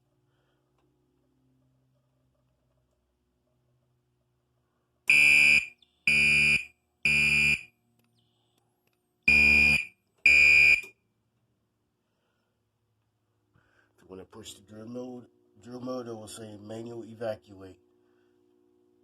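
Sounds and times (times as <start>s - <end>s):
harsh alarm horn blasts: 5.1s - 7.6s, 9.3s - 10.9s.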